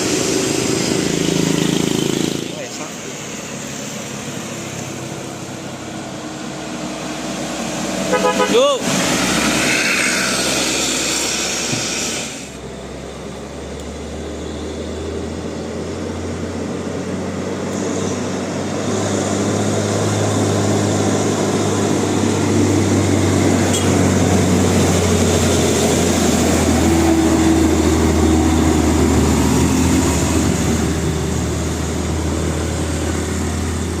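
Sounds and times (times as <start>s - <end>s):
heavy vehicle engine running: 0.0s - 34.0s
road noise: 0.0s - 34.0s
vehicle horn: 8.1s - 8.8s, 23.6s - 24.0s.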